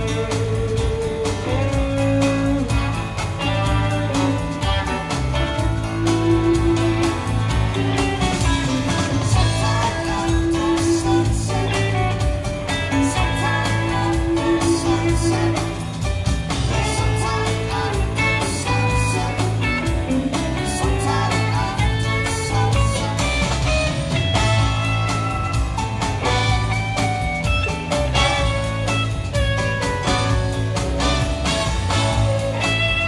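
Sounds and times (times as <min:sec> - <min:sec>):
blues-rock guitar music: 0:00.0 - 0:33.0
steady drum beat: 0:00.0 - 0:33.0.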